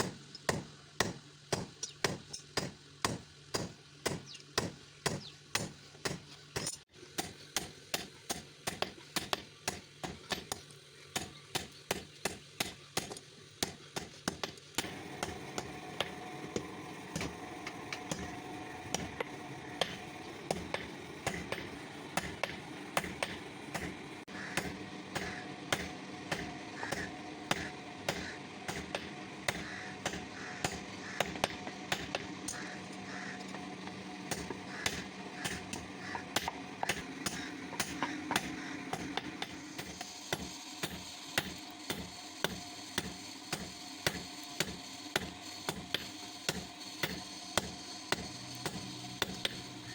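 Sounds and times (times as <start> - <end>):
steady hum: 14.8 - 49.9.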